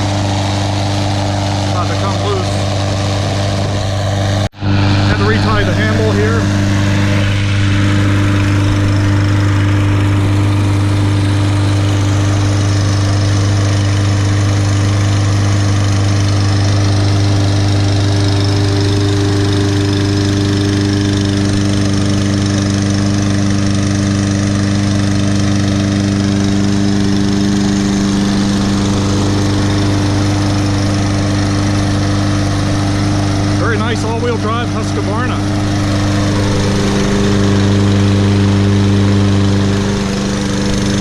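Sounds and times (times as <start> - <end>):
lawn mower engine running: 0.0 - 41.0.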